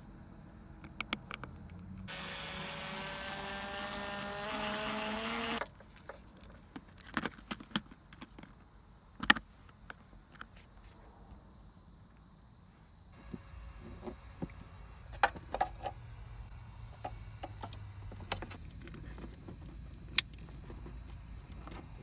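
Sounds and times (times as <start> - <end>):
electric drill boring: 2.1 - 5.6.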